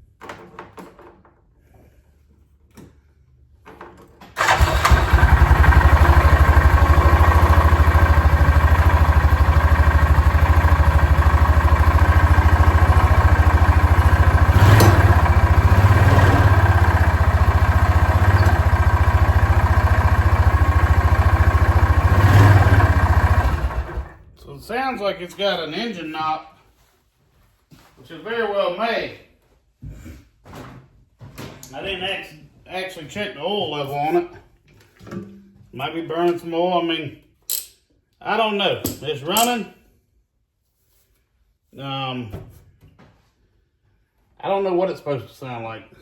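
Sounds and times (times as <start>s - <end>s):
engine bumps: 4.4s - 24.2s
engine starting and running: 4.4s - 24.3s.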